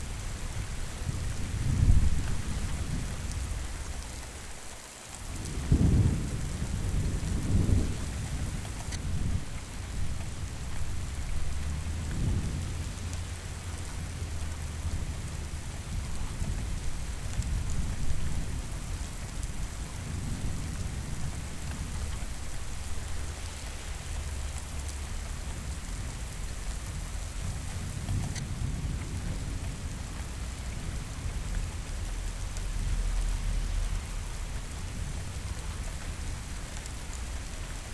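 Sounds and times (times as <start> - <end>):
steady rain falling: 0.0 - 37.9
rolling thunder: 5.4 - 10.1.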